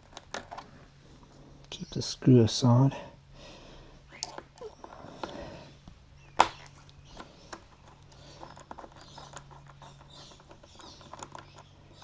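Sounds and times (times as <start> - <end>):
screwdriver clicking and scraping: 0.0 - 0.8, 4.2 - 5.4, 6.4 - 11.7
small metal parts handled: 0.0 - 0.8, 4.2 - 5.6, 6.4 - 12.0.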